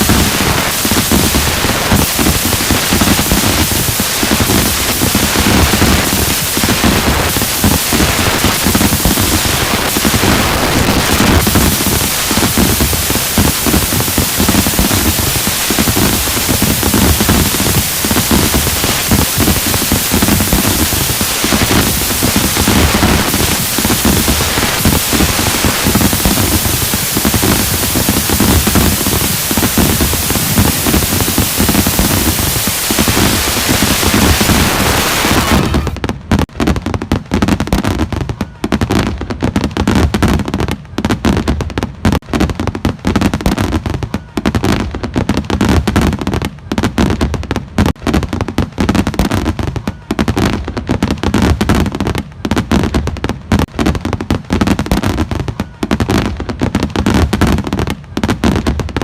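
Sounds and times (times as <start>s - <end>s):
fireworks hissing: 0.0s - 36.4s
fireworks crackling and banging: 0.0s - 59.0s.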